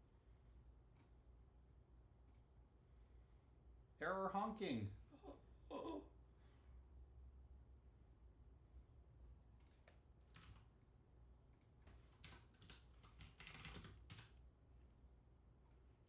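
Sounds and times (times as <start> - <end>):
low steady hum: 0.0 - 13.1
typing on a computer keyboard: 9.6 - 10.7, 11.6 - 14.4.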